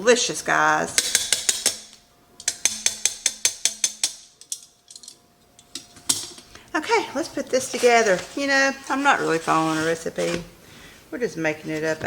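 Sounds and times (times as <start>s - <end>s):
utensil clicking against bowl: 1.0s - 6.3s.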